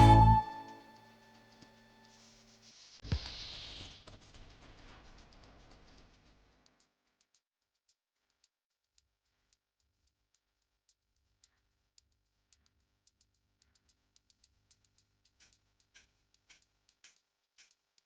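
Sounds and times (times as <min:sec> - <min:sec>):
faint small clicks and ticks: 0:09.3 - 0:18.0.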